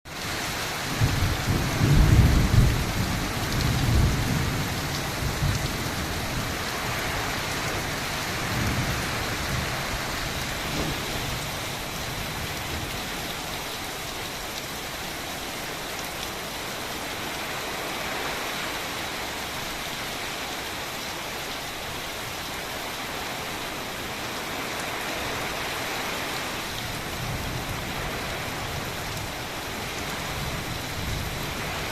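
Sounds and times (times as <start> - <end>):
heavy rain: 0.1 - 31.9
thunder rumbling: 0.9 - 13.6.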